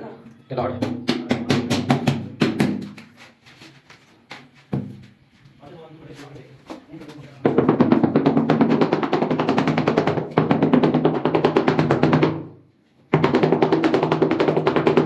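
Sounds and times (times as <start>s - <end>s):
music with fast drumming: 7.5s - 12.4s, 13.2s - 15.0s.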